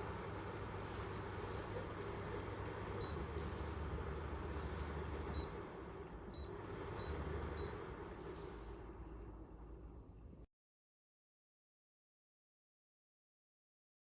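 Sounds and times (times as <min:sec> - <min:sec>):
air conditioner running: 0:00.0 - 0:10.5.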